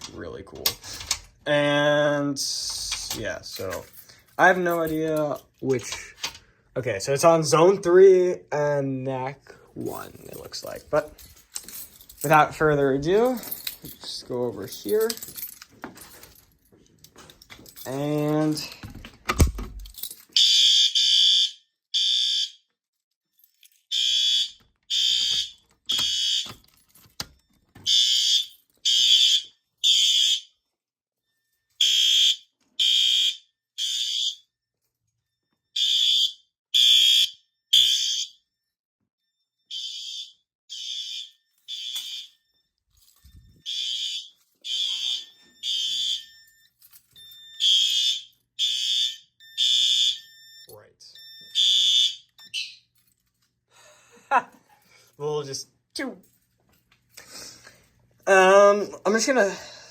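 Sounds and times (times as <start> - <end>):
fire alarm horn blasts: 20.4 - 22.6, 23.9 - 26.5, 27.8 - 30.6, 31.8 - 34.5, 35.8 - 38.5, 39.2 - 42.7, 43.6 - 52.8.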